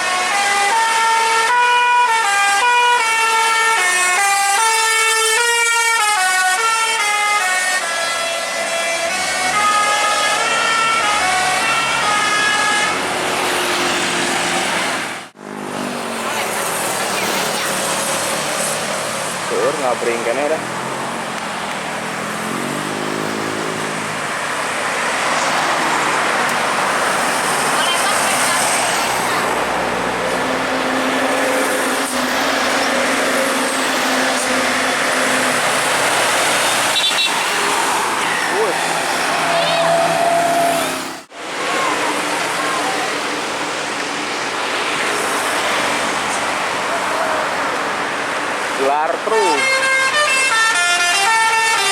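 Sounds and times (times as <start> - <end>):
bus engine and road noise: 0.0 - 51.9
vehicle and street noise: 0.0 - 51.9
bus horn playing a melody: 49.5 - 51.9.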